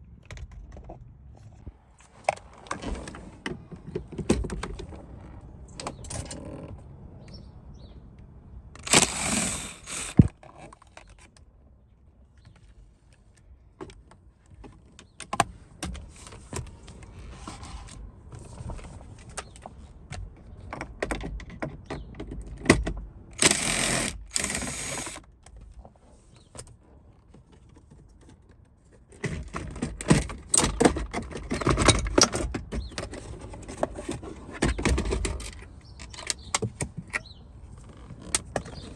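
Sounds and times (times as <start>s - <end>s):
short bursts of scraping: 8.8s - 10.4s.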